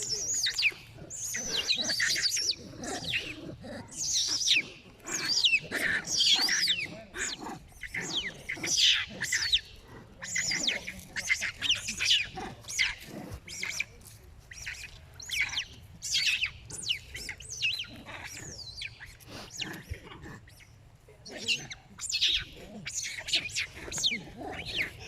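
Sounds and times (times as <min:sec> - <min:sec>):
young monkey squealing: 0:00.0 - 0:09.6, 0:10.2 - 0:13.9.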